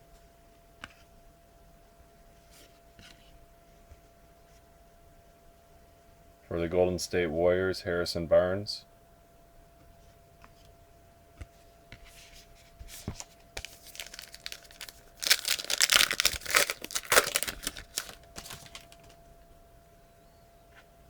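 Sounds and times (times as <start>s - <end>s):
plastic wrapper tearing and crinkling: 13.2s - 19.2s.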